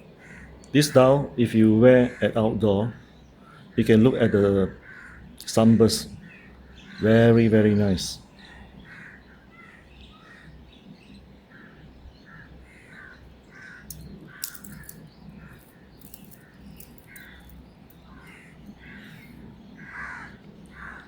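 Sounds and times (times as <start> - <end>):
birds making harsh calls: 0.0 - 1.2, 1.8 - 21.0
sharp clicks: 13.9 - 18.4.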